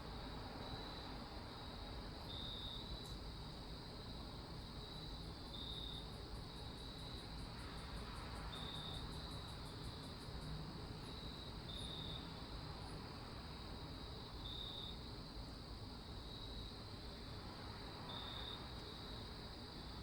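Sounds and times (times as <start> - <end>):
crickets chirping: 0.0 - 20.0
soft steady hiss: 0.0 - 20.0
high ticking insect trill: 0.2 - 20.0.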